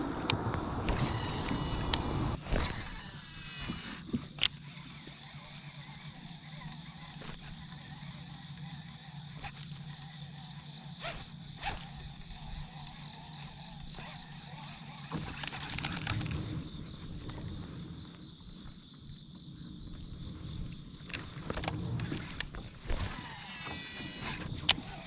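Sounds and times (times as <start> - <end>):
fishing gear knocks and clicks: 15.2 - 17.9, 18.6 - 23.1.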